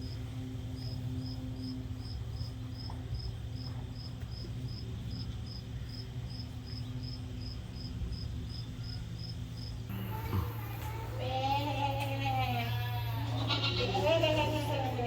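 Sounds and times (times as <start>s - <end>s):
low steady hum: 0.0s - 15.0s
cricket chirping: 0.8s - 10.6s.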